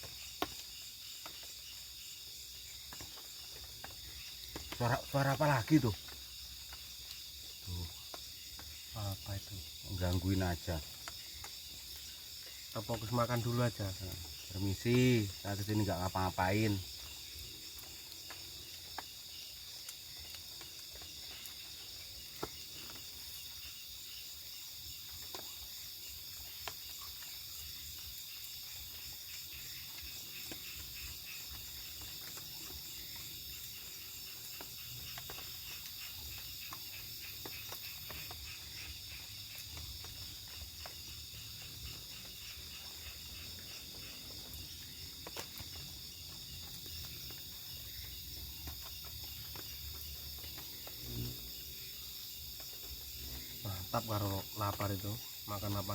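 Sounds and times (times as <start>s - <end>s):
crickets and insects chirring: 0.0s - 55.9s.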